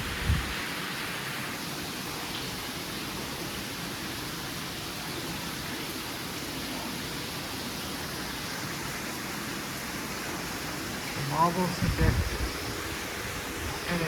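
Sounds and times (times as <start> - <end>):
ceiling fan air rush: 0.0 - 1.6, 9.7 - 14.0.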